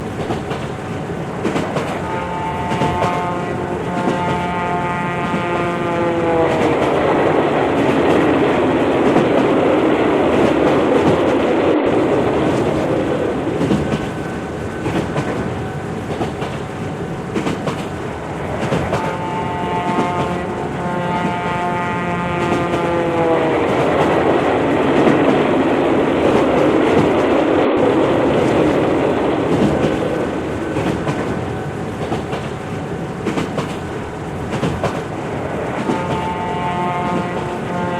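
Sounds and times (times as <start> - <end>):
train wheels rumbling: 0.0 - 37.9
train horn blasts: 2.0 - 7.2, 18.9 - 24.0, 35.8 - 37.9.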